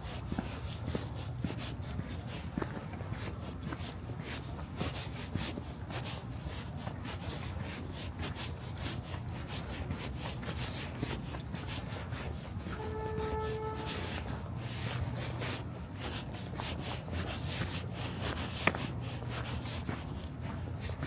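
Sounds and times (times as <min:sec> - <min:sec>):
footsteps crunching: 0:00.0 - 0:21.0
short horn note: 0:12.7 - 0:14.4.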